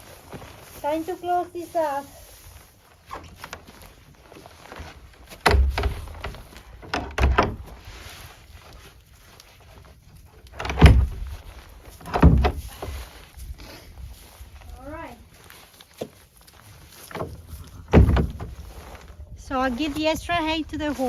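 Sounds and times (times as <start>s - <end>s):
door knocks and thuds: 5.4s - 7.7s, 10.6s - 11.3s, 12.0s - 12.6s, 17.2s - 18.6s.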